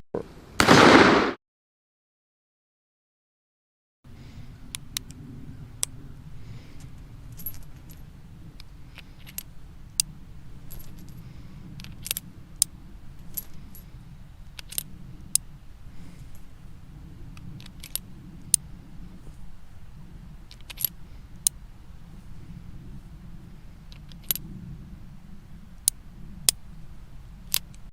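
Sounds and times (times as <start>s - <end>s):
steady low hum: 4.1s - 27.9s
revolver metallic clicks: 4.7s - 6.0s, 6.8s - 15.6s, 20.5s - 21.6s, 23.9s - 24.5s, 27.4s - 27.9s.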